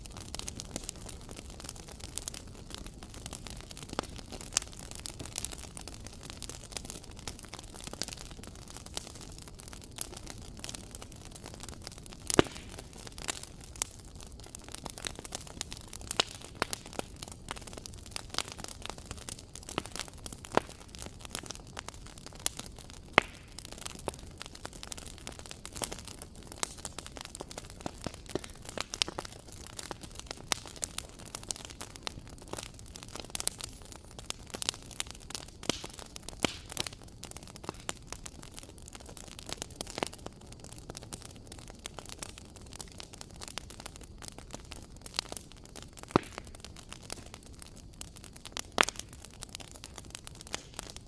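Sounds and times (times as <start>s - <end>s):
fire crackling and popping: 0.0s - 51.0s.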